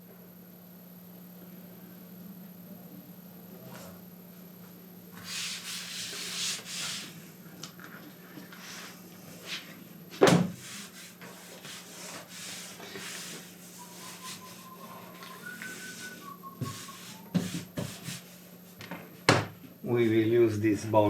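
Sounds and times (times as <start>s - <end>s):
faint whistling: 13.7s - 17.6s.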